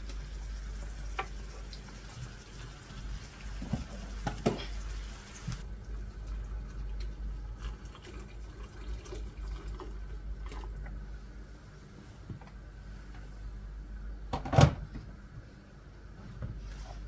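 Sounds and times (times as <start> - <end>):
water running from tap into sink: 0.0 - 5.6.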